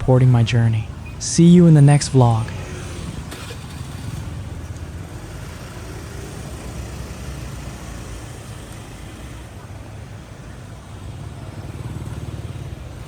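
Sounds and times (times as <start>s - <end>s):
low rumble of street traffic: 0.0s - 13.0s.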